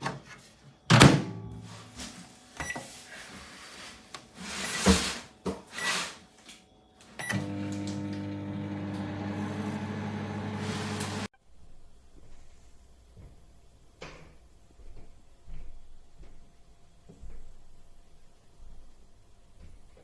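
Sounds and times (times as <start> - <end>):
microwave oven humming: 7.2 - 11.3.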